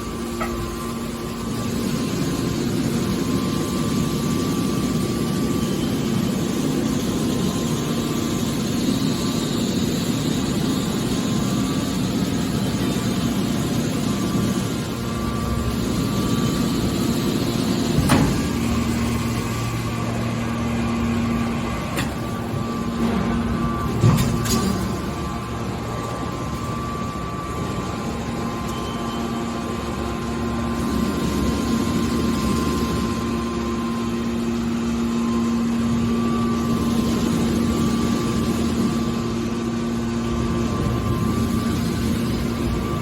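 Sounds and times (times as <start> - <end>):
hydraulic machinery hum and whine: 0.0 - 43.0.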